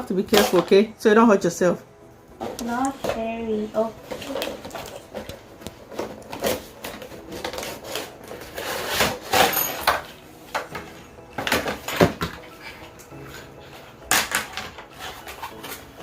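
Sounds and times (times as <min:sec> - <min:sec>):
box packaging being pulled open: 0:06.0 - 0:09.6.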